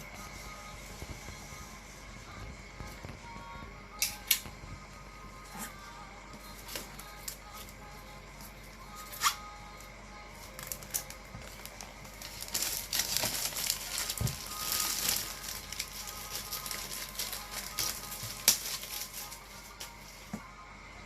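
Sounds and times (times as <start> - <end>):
background music: 0.0 - 21.0
packaging crinkling and tearing: 10.4 - 20.0.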